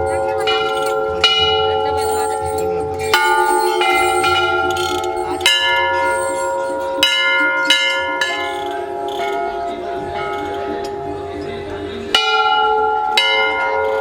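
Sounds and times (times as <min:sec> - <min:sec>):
brass bells ringing: 0:00.0 - 0:14.0.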